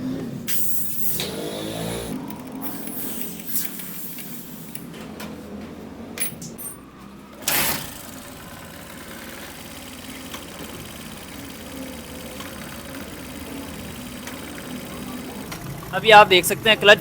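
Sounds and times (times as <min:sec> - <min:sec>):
motorcycle engine idling: 0:07.0 - 0:17.0
loud engine burst: 0:07.3 - 0:17.0.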